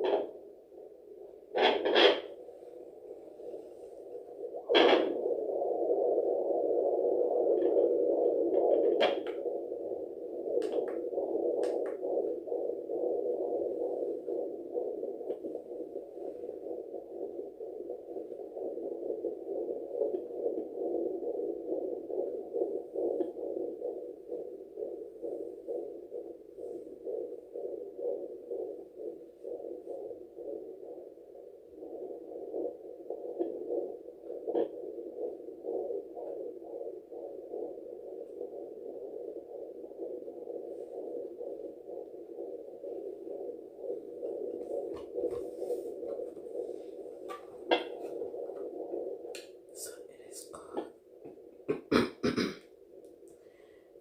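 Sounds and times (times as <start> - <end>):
pulsing heartbeat whoosh: 0.0 - 53.2
sharp clicks: 11.6 - 12.0.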